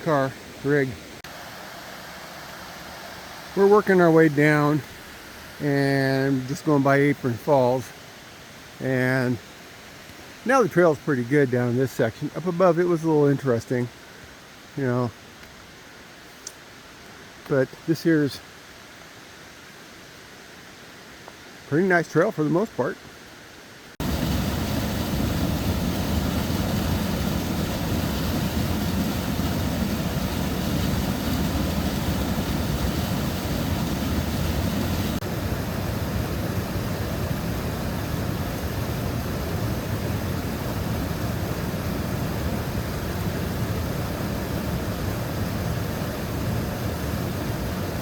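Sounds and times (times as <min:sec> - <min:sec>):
waterfall roaring: 0:24.0 - 0:48.0.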